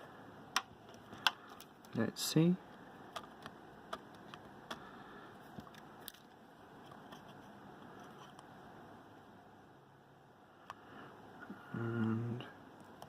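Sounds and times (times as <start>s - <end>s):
clicks of small parts being handled: 5.6s - 7.4s.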